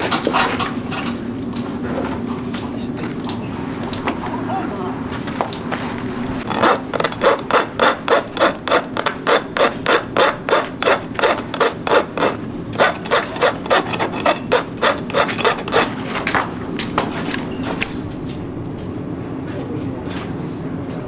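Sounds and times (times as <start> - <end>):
hoof rasp filing a hoof: 6.4 - 17.9.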